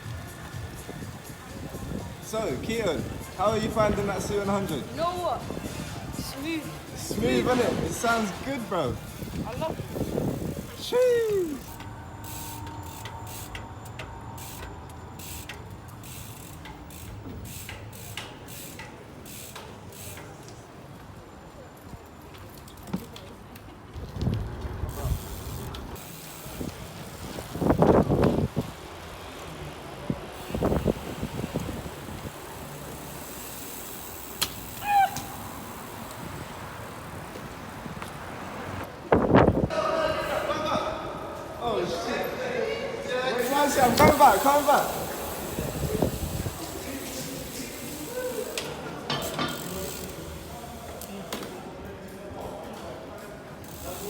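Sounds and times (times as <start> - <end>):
bicycle freehub ticking: 0.0 - 21.0, 24.1 - 38.2, 43.4 - 52.6, 53.5 - 54.0
low rumble of tyres on road: 0.0 - 39.7
traffic noise: 0.0 - 54.0
wind: 0.0 - 54.0.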